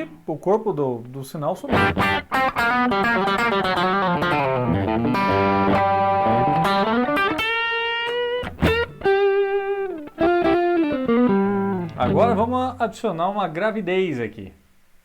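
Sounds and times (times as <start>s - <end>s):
overdriven electric guitar: 1.7s - 12.5s.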